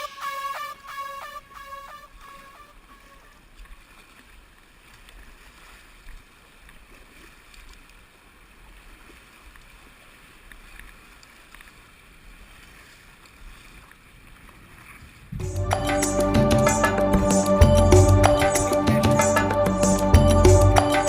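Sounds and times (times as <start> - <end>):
river water washing around kayak: 0.0 - 16.2.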